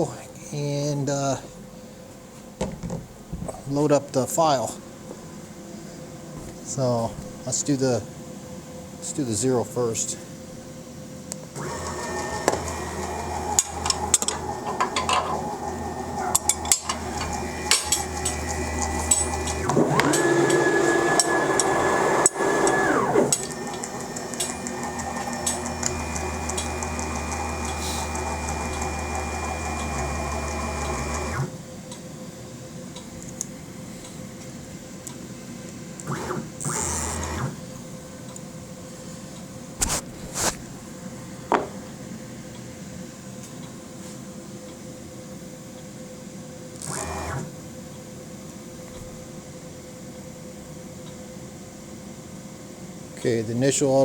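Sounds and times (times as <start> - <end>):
stepper motor whine: 11.6 - 31.5, 36.0 - 37.6, 46.8 - 47.5.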